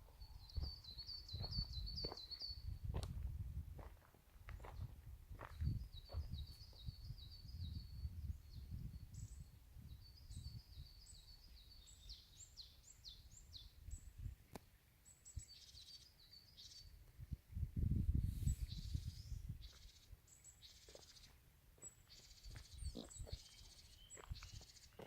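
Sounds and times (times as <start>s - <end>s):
songbirds chirping and trilling: 0.0s - 3.1s, 3.8s - 25.0s
low rumble on microphone: 1.3s - 3.9s, 17.2s - 19.7s.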